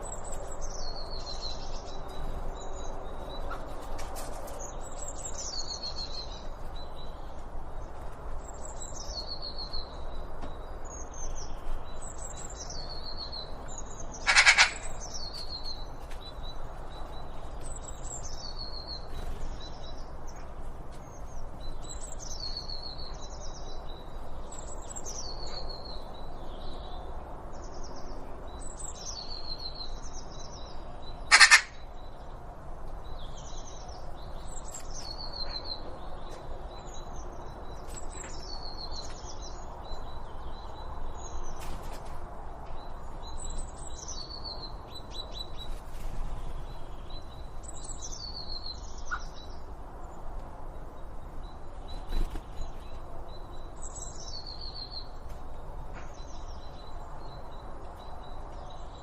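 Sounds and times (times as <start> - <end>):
outdoor background noise: 0.0 - 59.0
songbird singing: 0.0 - 59.0
harsh bird call: 14.2 - 15.0, 31.3 - 31.8.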